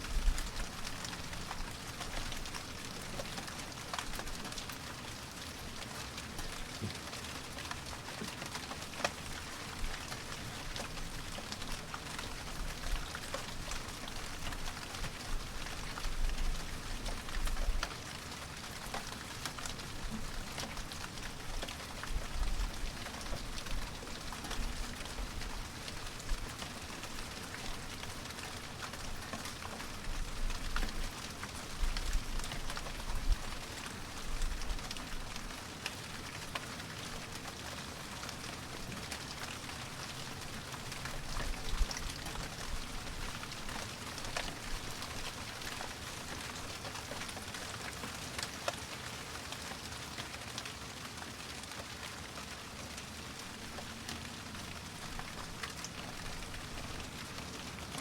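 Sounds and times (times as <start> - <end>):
rain drops pattering: 0.0 - 58.0.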